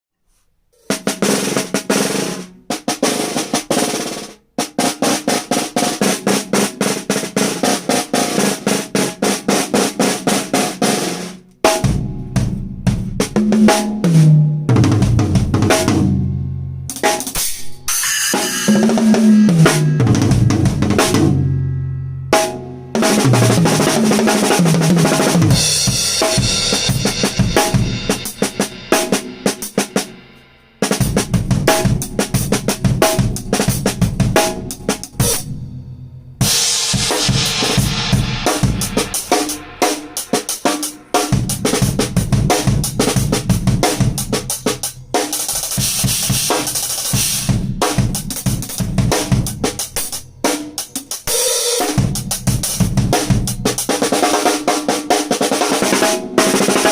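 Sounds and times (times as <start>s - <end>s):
drum kit playing: 0.8s - 56.9s
bass drum: 11.6s - 17.8s, 18.4s - 30.0s, 30.8s - 35.8s, 36.4s - 54.2s
cymbal wash: 17.5s - 22.8s, 36.6s - 41.6s.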